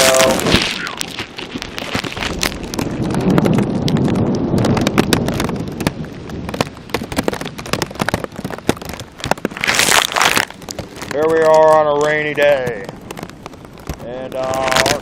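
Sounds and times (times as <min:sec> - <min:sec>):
low rumble: 0:00.0 - 0:09.7
rain tapping on plastic bag: 0:00.0 - 0:15.0
steady hiss of rainfall: 0:00.0 - 0:15.0.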